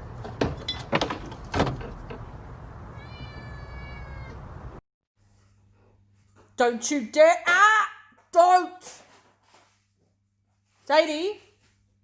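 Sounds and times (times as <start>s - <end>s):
cat meowing: 2.9s - 4.6s.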